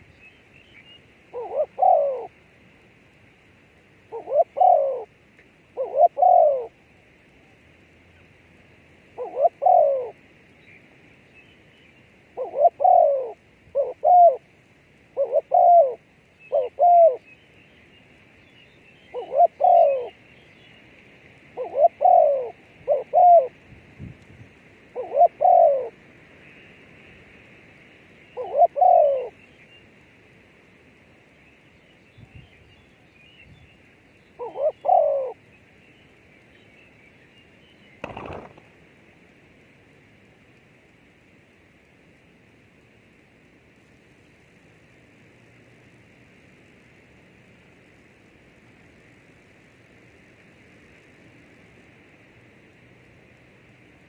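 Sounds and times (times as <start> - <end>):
faint high hiss: 0.0 - 54.0
dove cooing: 1.3 - 2.4, 4.1 - 6.8, 9.2 - 10.2, 12.4 - 14.4, 15.1 - 17.2, 19.1 - 20.2, 21.6 - 23.6, 24.9 - 26.0, 28.4 - 29.4, 34.4 - 35.4.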